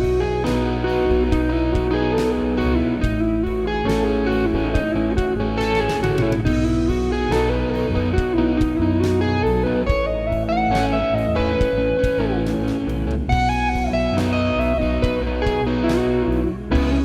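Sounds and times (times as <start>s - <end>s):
blues electric guitar music: 0.0s - 17.0s.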